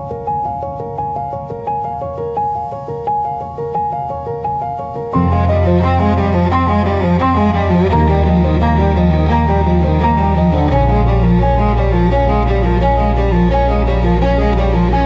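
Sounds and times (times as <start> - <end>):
ambient string music with cello: 5.2 - 15.0.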